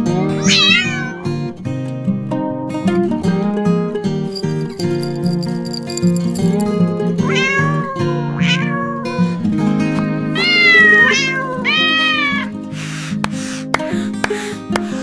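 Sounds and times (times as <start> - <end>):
kitten meowing: 0.0 - 1.5, 7.2 - 9.3, 10.4 - 12.5
strummed acoustic guitar: 0.0 - 15.0.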